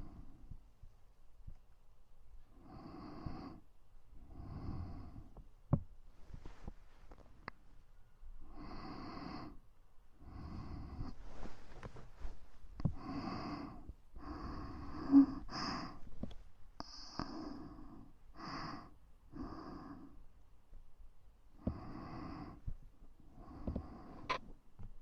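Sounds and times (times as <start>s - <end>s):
breathy puffs into microphone: 10.5s - 16.4s.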